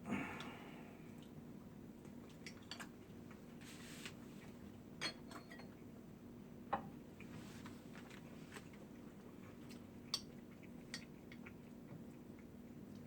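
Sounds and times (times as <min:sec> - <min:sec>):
utensils clinking against dishes: 0:05.0 - 0:05.7.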